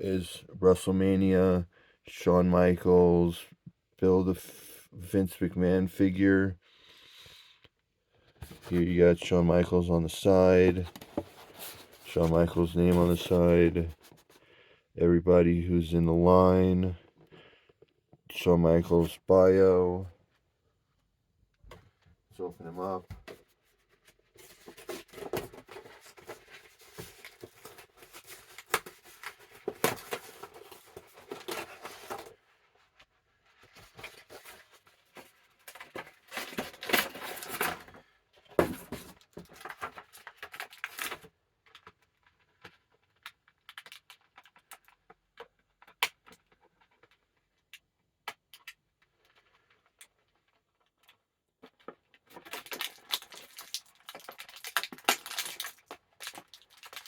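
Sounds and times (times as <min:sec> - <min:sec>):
packaging rustling and tearing: 0:24.0 - 0:32.4, 0:33.6 - 0:45.2, 0:48.6 - 0:57.0.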